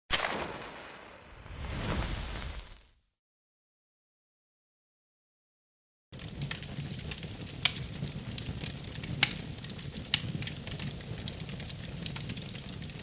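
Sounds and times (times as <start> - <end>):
fire burning and crackling: 0.1 - 2.9, 6.2 - 13.0
fire popping: 0.1 - 2.9, 6.2 - 13.0.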